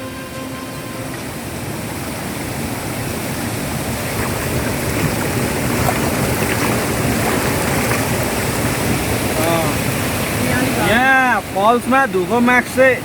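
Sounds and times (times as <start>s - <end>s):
background music: 0.0s - 1.6s
waterfall rushing: 0.0s - 13.0s.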